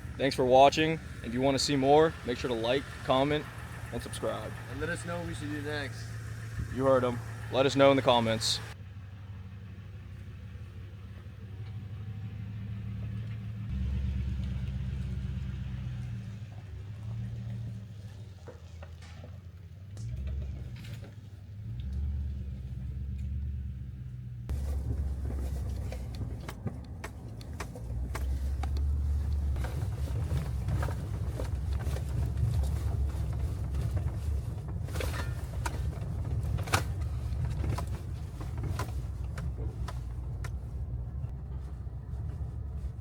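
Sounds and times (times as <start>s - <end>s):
vehicle engine and road noise: 0.0s - 43.0s
knocks and rattles: 24.5s - 41.4s.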